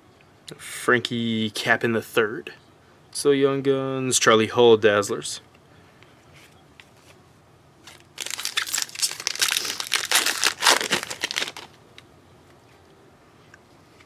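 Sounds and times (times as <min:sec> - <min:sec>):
wrapper crinkling: 0:07.8 - 0:11.8.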